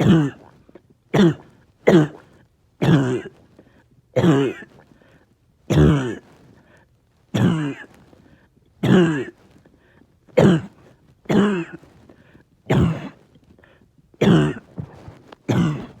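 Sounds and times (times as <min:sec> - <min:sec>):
person coughing harshly: 0:00.0 - 0:00.5, 0:01.1 - 0:03.3, 0:04.2 - 0:04.7, 0:05.7 - 0:06.2, 0:07.4 - 0:07.9, 0:08.8 - 0:09.4, 0:10.4 - 0:11.8, 0:12.7 - 0:13.2, 0:14.2 - 0:16.0.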